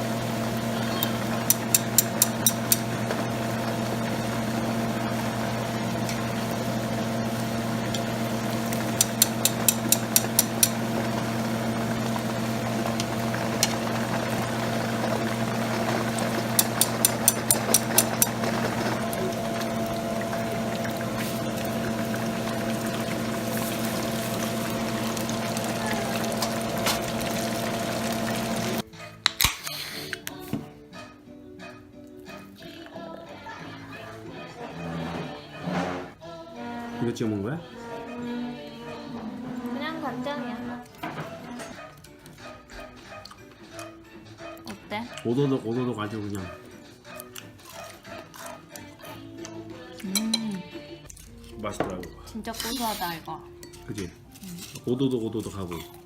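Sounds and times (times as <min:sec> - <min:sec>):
deep-frying sizzle in oil: 0:00.0 - 0:28.8
kitchen fan hum: 0:00.0 - 0:28.8.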